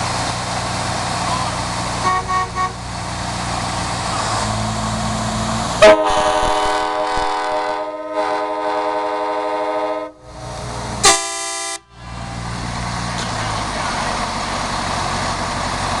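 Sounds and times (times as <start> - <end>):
short loud horn blast: 2.0 - 2.8, 5.8 - 10.2, 11.0 - 11.9
train horn chord: 2.0 - 2.8, 5.8 - 10.2, 11.0 - 11.9.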